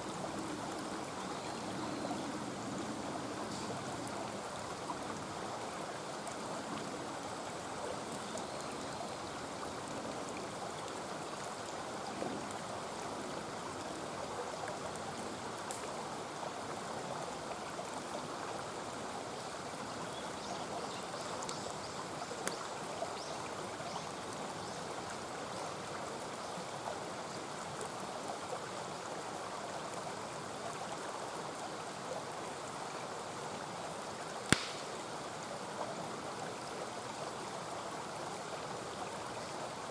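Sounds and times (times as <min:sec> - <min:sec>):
stream running: 0:00.0 - 0:39.9
campfire pops: 0:34.5 - 0:35.1.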